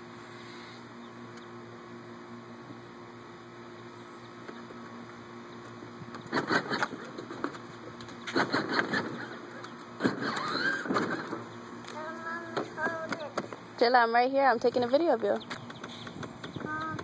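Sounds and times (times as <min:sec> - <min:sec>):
toy car electric motor humming: 0:08.3 - 0:11.4.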